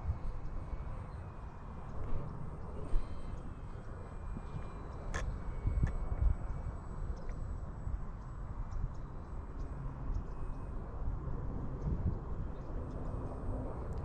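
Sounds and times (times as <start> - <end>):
wind buffeting microphone: 0.0 - 14.0
faint ticks: 8.2 - 10.7.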